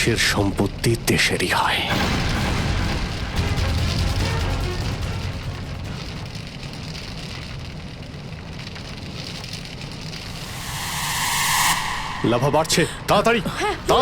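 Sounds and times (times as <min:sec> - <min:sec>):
low rumble: 0:10.2 - 0:13.4.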